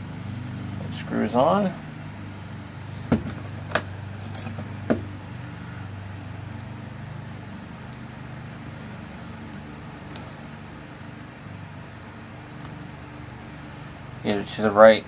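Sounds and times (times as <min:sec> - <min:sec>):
steady low hum: 0:00.0 - 0:15.0
metal lock parts clicking and rattling: 0:03.2 - 0:04.8.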